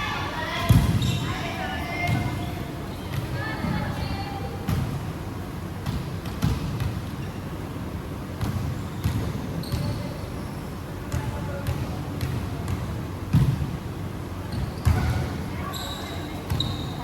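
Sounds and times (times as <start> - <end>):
sneaker squeak: 0.6 - 4.8, 6.4 - 7.5, 8.4 - 11.2, 14.5 - 17.0
basketball bouncing on hard court: 5.8 - 7.1, 8.4 - 10.0, 11.1 - 13.7, 14.5 - 15.3.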